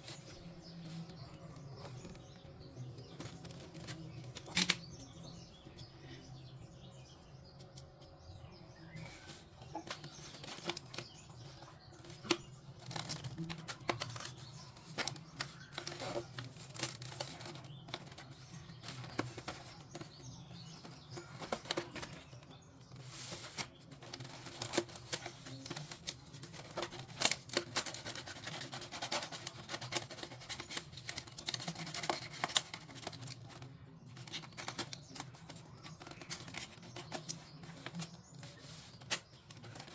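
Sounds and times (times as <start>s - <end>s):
packaging crinkling and tearing: 12.0s - 19.9s, 23.1s - 39.9s.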